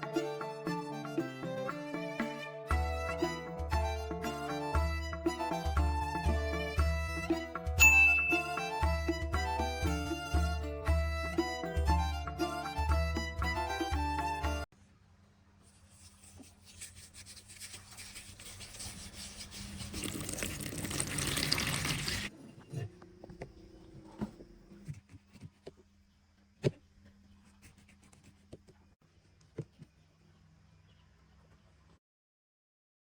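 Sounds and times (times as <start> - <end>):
water running into vessel: 18.2 - 22.4.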